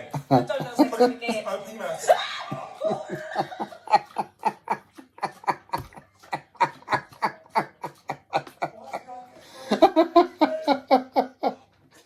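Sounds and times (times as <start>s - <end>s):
person laughing hard: 2.0s - 11.6s.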